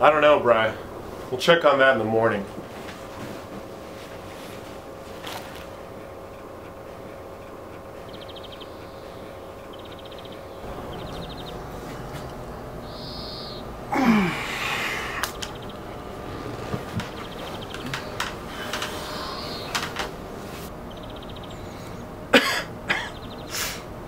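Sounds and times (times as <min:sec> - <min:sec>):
man coughing hoarsely: 0:13.9 - 0:15.1, 0:22.3 - 0:23.2.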